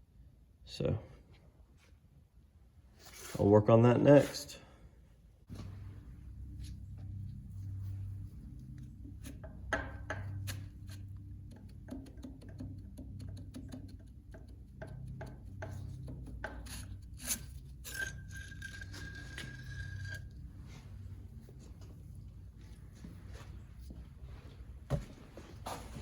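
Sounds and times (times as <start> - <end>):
steady low hum: 4.6 - 26.0
metal tools clinking and scraping: 16.8 - 20.8.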